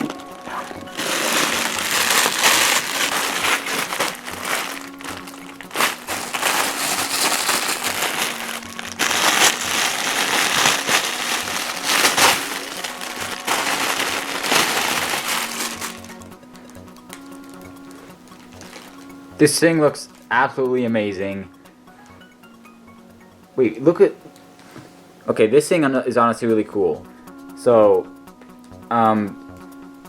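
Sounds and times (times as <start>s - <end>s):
simple background tune: 0.0s - 30.0s
packaging rustling and crinkling: 0.9s - 19.2s.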